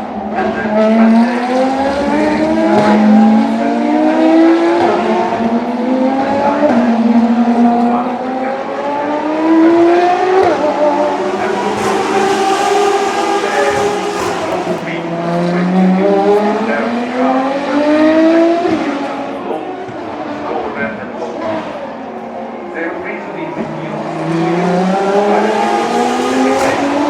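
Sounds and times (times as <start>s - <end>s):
race cars accelerating hard: 0.0s - 27.0s.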